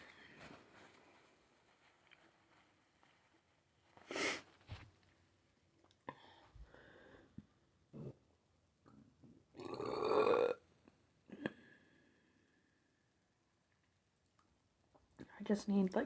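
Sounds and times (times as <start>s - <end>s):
loud burp: 9.6s - 10.6s.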